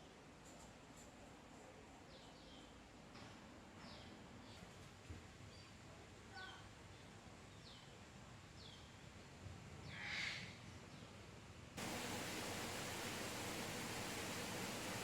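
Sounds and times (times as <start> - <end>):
faint outdoor hiss: 10.8 - 15.0.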